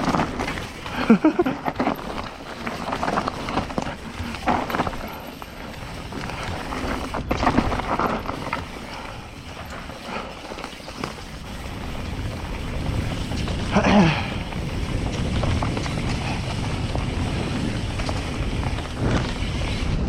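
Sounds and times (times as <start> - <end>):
bike rattling over bumps: 0.0 - 20.0
rider breathing hard: 0.4 - 20.0
wind rumble on microphone: 10.9 - 20.0.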